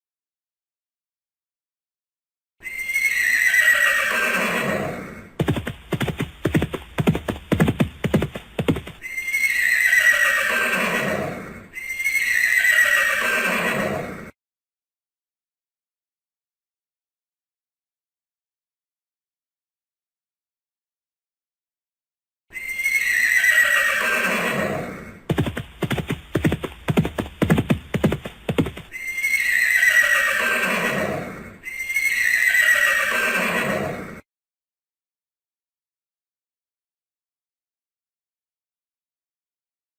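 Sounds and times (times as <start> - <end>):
horse whinnying: 2.6 - 14.3, 22.5 - 34.2
horse hooves clip-clopping: 5.4 - 9.0, 25.3 - 29.0
rhythmic short beats: 5.4 - 9.0, 25.3 - 28.9.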